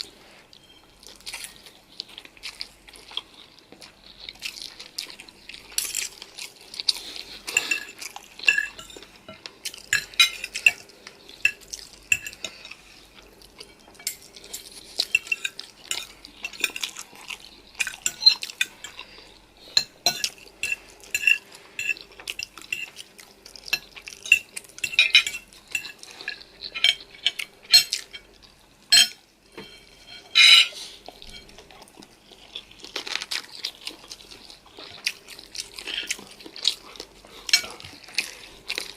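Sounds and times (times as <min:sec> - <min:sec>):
cutlery clinking against dish: 0:07.4 - 0:12.8, 0:13.6 - 0:19.1, 0:19.8 - 0:23.0, 0:23.7 - 0:28.3, 0:28.9 - 0:31.7, 0:37.5 - 0:38.4.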